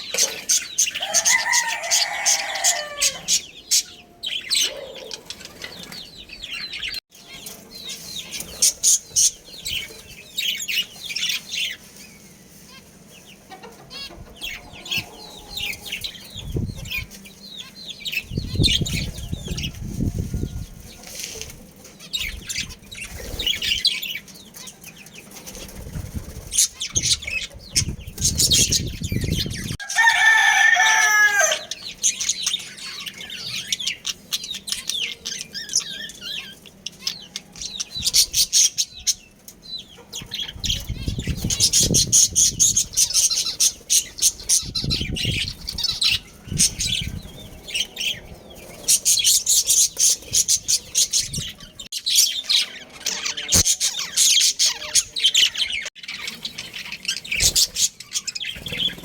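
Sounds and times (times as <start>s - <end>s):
wings flapping: 25.3s - 29.4s, 58.5s - 59.0s.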